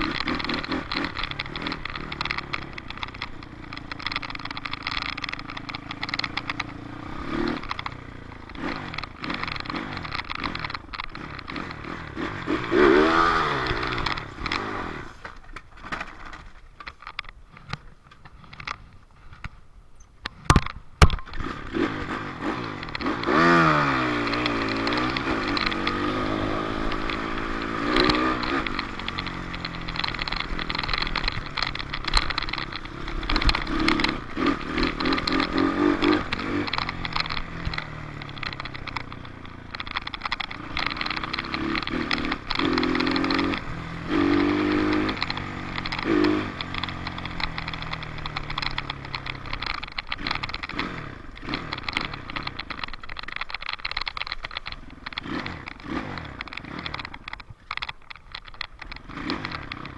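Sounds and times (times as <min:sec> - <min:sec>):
dirt bike engine revving: 0:00.0 - 0:15.3, 0:21.2 - 0:57.8, 0:58.7 - 0:59.9
knocks and clatter: 0:00.0 - 0:19.6, 0:20.2 - 0:59.9.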